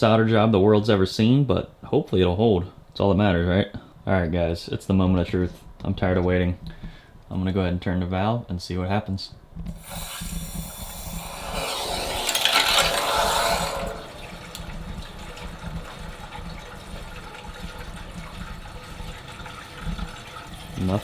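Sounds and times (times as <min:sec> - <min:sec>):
water rushing through pipe: 0:09.8 - 0:21.0.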